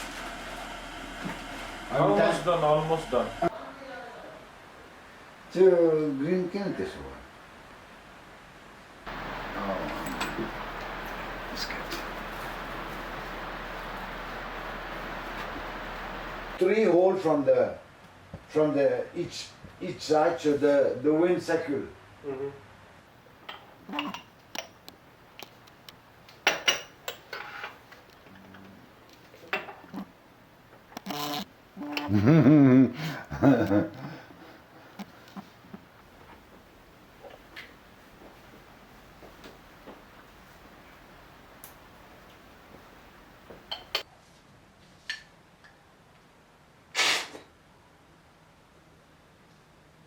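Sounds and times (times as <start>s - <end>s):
crockery clinking: 9.1s - 12.4s, 26.5s - 27.8s, 43.6s - 44.1s
brief rush of noise: 47.0s - 47.5s.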